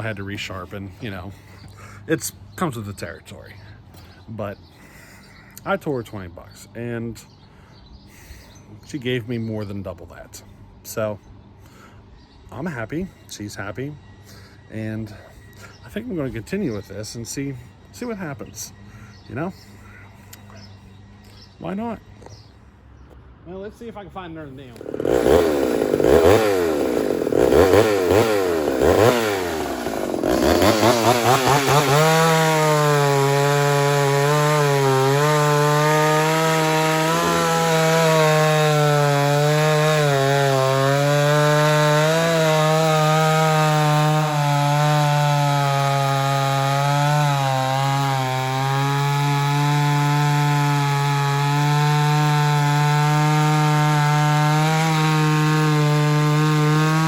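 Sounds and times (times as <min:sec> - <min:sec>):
chainsaw revving and cutting wood: 0:00.0 - 0:03.3, 0:24.6 - 0:57.0.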